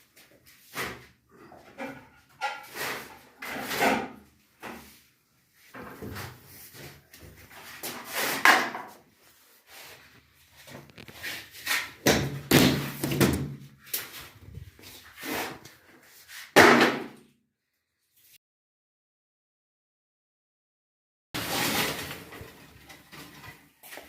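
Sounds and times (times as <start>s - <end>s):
knocks scrapes and bangs: 21.4s - 23.6s.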